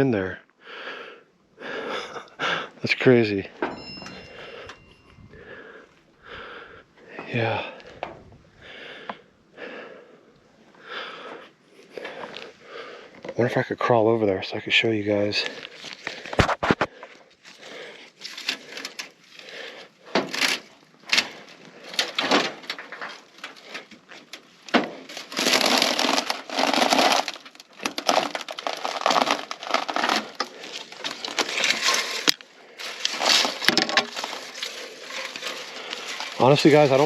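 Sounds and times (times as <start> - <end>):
debris crunching under crawling person: 15.2 - 37.0.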